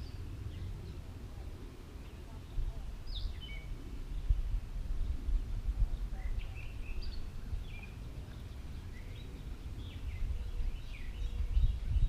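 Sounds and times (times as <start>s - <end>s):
birds chirping: 0.0s - 12.0s
wind rumble on microphone: 0.0s - 12.0s.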